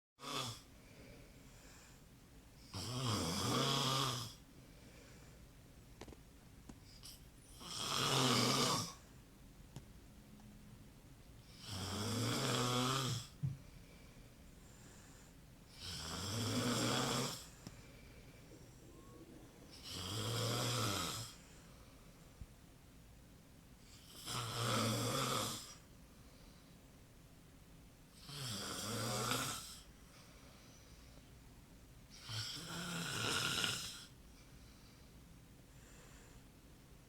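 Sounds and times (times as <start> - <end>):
person snoring: 2.7 - 4.4, 7.6 - 9.0, 11.5 - 13.4, 15.7 - 17.6, 18.4 - 21.5, 24.0 - 25.8, 32.2 - 34.1.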